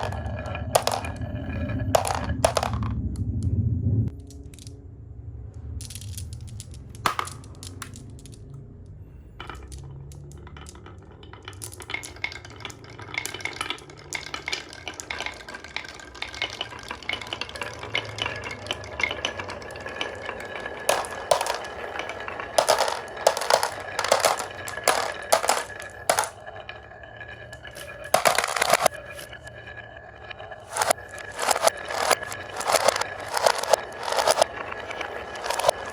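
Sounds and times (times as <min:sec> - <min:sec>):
marbles rolling and clacking: 0:00.0 - 0:03.5, 0:04.1 - 0:04.8, 0:05.5 - 0:35.9.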